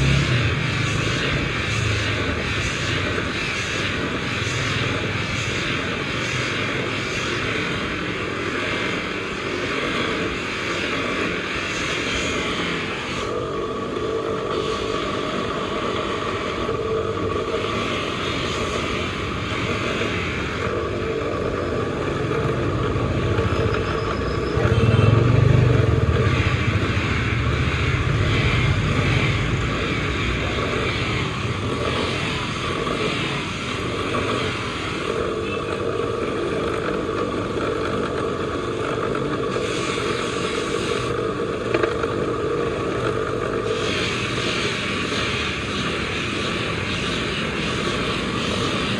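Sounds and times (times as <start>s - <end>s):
motor running: 0.0s - 48.9s.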